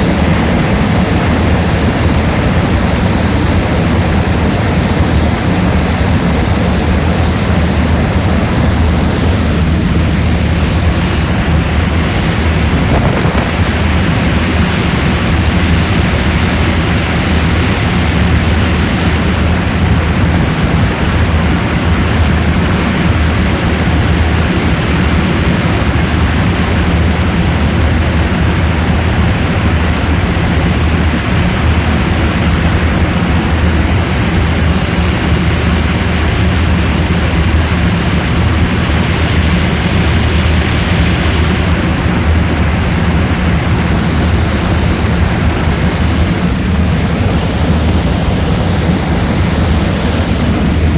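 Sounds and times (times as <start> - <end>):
propeller aircraft engine drone: 0.0 - 50.9
rush of air: 5.6 - 16.4, 40.2 - 50.9.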